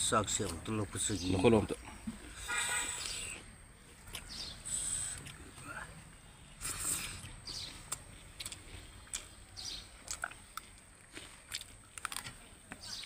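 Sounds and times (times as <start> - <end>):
chewing: 4.0 - 4.4, 6.6 - 13.0
lip smacks: 6.6 - 12.2
wet mouth clicks: 10.0 - 10.7.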